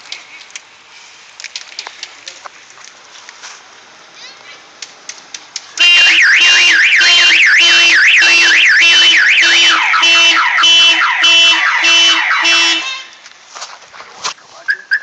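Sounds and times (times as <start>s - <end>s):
pulsing beep: 5.8s - 12.4s
car alarm falling chirps: 5.8s - 12.8s
car alarm wailing: 5.8s - 13.1s.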